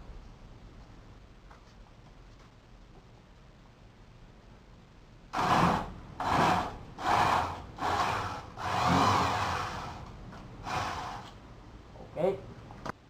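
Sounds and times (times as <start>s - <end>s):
hand tool scraping wood: 5.4s - 11.4s.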